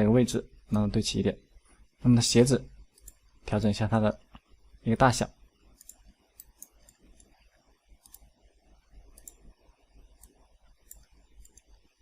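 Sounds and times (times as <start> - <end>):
faint computer mouse clicks: 3.0 - 3.2, 9.2 - 9.5, 10.2 - 11.7.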